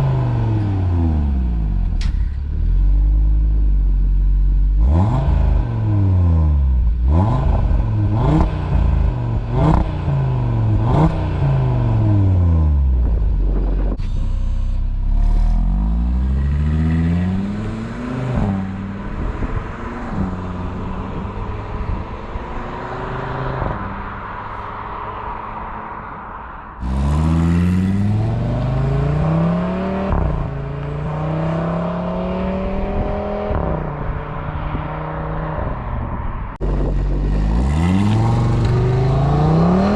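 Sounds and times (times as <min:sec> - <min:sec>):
car engine revving: 0:00.0 - 0:24.3, 0:26.8 - 0:39.9
car accelerating hard with gear shifts: 0:04.8 - 0:23.9, 0:36.6 - 0:39.9.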